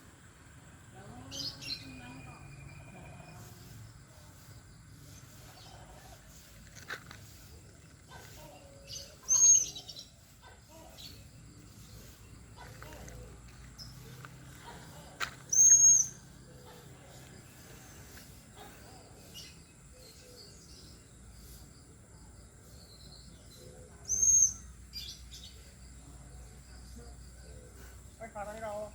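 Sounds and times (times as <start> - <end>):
lovebird shrill calls: 15.5 - 16.2
faint bird chirps: 15.5 - 28.2.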